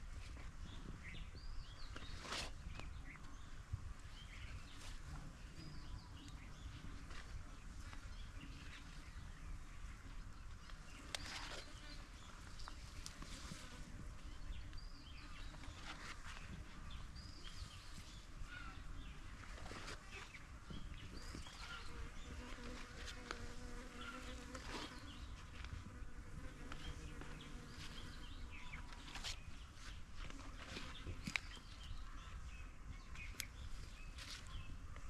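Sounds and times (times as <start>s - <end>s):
faint insect buzzing: 21.2s - 28.7s.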